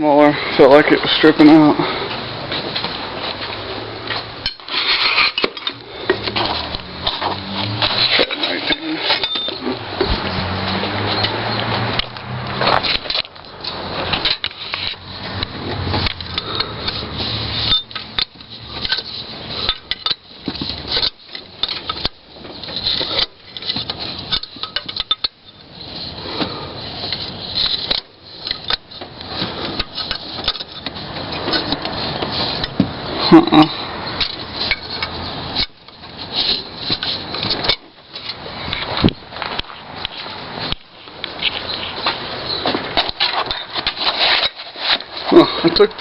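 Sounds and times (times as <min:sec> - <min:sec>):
metal clank: 0:04.1 - 0:10.4
wrench clinking against metal: 0:07.8 - 0:10.1, 0:17.6 - 0:25.7, 0:34.0 - 0:38.3.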